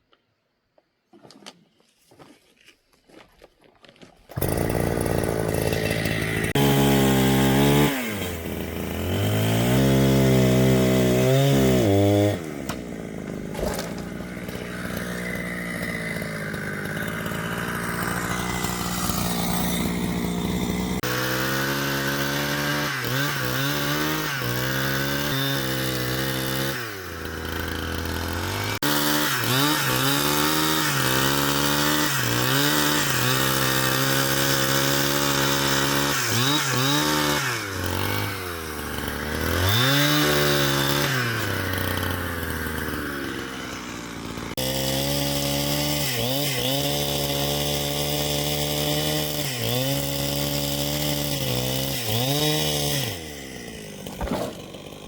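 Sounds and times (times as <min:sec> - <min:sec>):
chainsaw cutting wood: 0:04.0 - 0:55.0.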